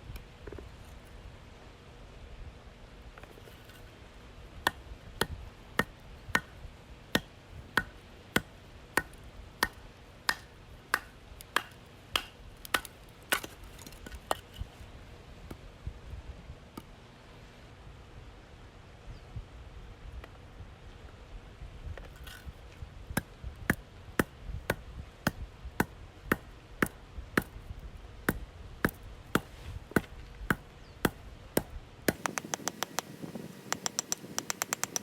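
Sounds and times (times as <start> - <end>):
faint taps: 33.7 - 35.0.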